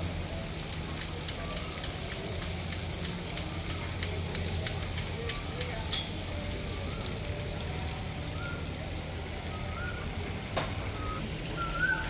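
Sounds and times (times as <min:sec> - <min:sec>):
short rising bird whistles: 0:10.9 - 0:12.0.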